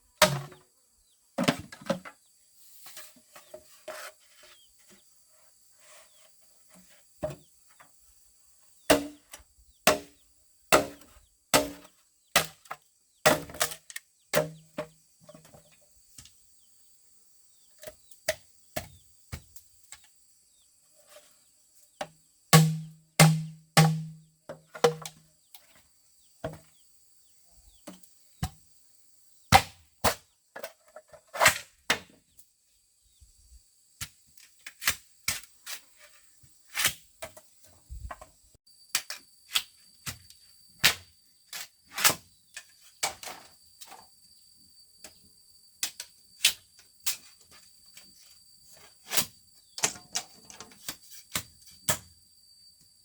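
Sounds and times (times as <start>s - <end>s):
chopping strikes on wood: 8.9s - 13.8s, 22.0s - 25.0s, 29.5s - 30.2s.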